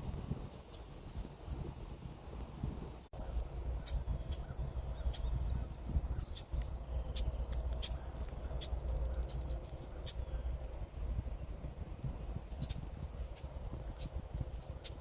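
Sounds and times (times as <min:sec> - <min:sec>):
steady low rumble: 0:00.0 - 0:15.0
small birds chirping: 0:02.0 - 0:02.6, 0:03.2 - 0:15.0.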